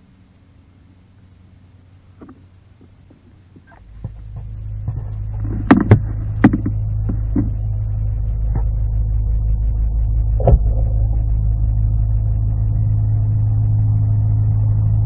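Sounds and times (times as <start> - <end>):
low engine hum: 0.0 - 15.0
sharp knocks: 4.0 - 7.6.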